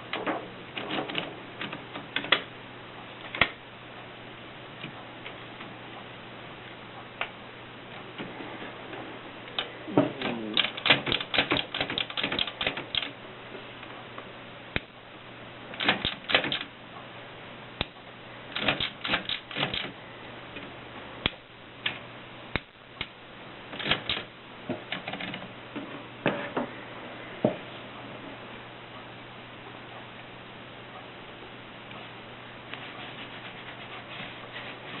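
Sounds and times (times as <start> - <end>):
manual typewriter keys striking: 0.8 - 2.5, 9.6 - 13.1, 15.8 - 16.7, 18.5 - 19.9, 23.7 - 24.3, 24.9 - 25.5.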